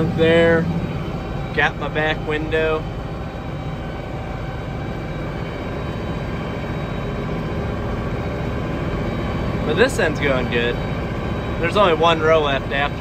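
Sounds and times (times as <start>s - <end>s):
tractor diesel engine under load: 0.0s - 13.0s
corn picker working: 9.6s - 10.8s.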